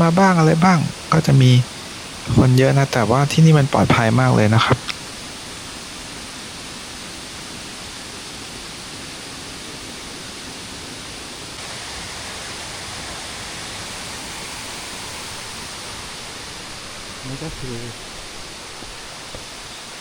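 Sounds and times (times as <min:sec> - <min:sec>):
waterfall rushing: 0:00.0 - 0:20.0.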